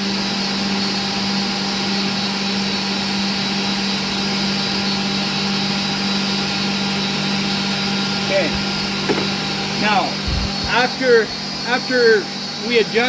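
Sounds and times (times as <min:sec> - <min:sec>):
woodworking machinery humming: 0:03.4 - 0:13.0.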